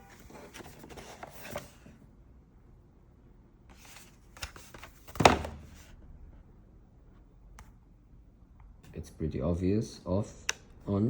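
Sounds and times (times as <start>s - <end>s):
plastic device rustle: 0.0s - 1.9s.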